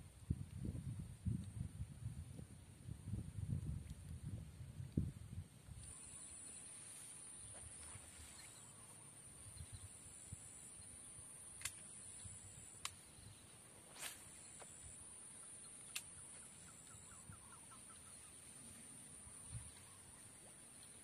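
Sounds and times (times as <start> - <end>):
sharp clicks: 11.6 - 12.1, 15.7 - 16.2.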